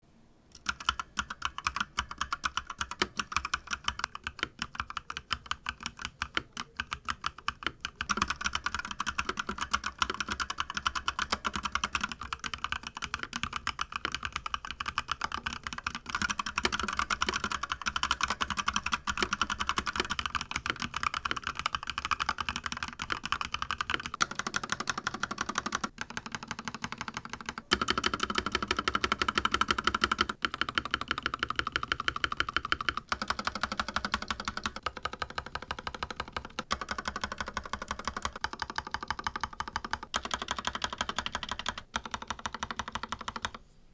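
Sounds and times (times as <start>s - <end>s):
mechanical keyboard typing: 0.5s - 43.6s.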